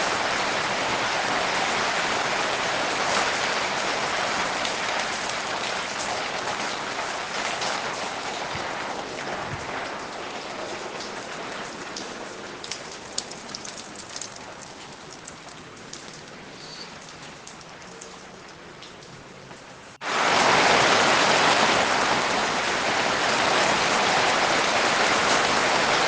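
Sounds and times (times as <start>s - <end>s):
steady rain hiss: 0.0s - 26.0s
raindrops ticking: 4.6s - 20.0s.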